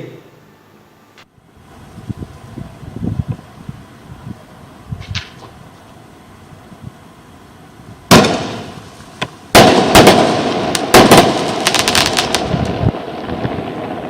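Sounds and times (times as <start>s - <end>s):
firework bangs: 8.1s - 14.0s
sharp crackles: 8.1s - 14.0s.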